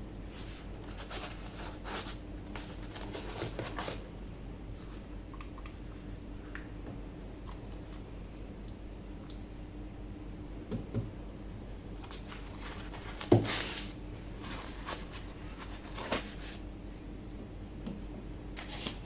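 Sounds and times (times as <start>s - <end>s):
steady low hum: 0.0s - 19.0s
packaging rustling and sliding: 12.1s - 16.7s.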